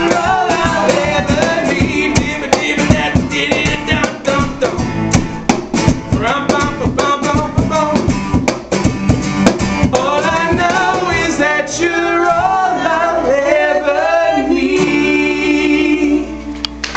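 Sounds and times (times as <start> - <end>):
voices singing: 0.0 - 5.1, 9.8 - 16.8
cajon beat: 0.0 - 12.8
strummed acoustic guitar: 0.0 - 16.9.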